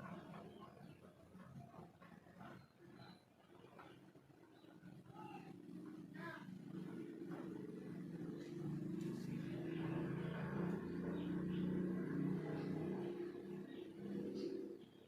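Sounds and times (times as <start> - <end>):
vehicle engine running: 4.9 - 15.0.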